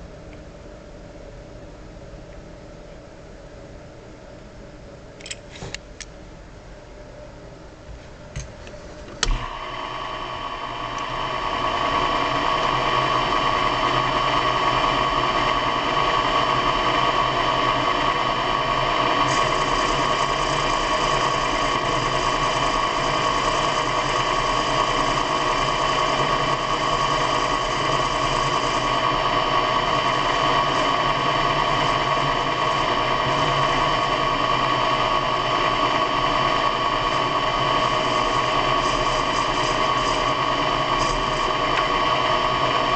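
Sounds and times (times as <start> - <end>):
electric motor humming whine: 8.6 - 42.9
motor switch click: 9.1 - 9.4.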